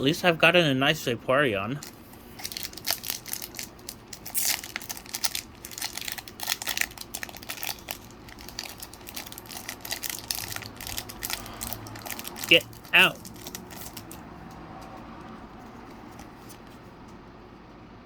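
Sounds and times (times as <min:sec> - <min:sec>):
foil wrapper crinkling and tearing: 0:01.8 - 0:14.2.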